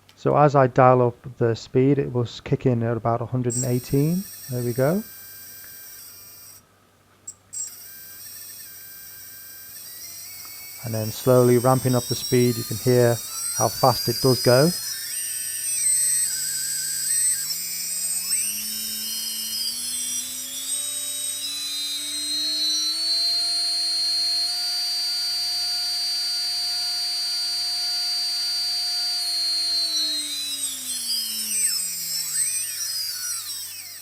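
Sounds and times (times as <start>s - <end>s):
high-pitched electronic whistles: 3.5s - 6.6s, 7.3s - 34.0s
electric motor whine: 3.5s - 6.7s, 7.3s - 34.0s.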